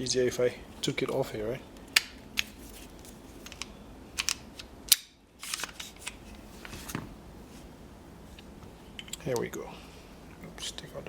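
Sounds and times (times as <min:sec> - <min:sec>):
clicks of handling pistol parts: 0:03.4 - 0:06.2.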